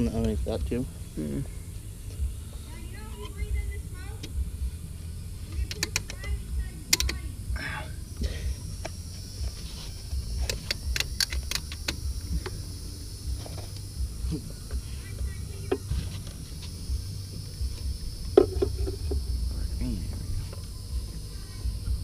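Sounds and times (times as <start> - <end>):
steady low rumble: 0.0 - 22.0
metallic clicks of hand tools: 5.7 - 6.2, 10.4 - 12.0.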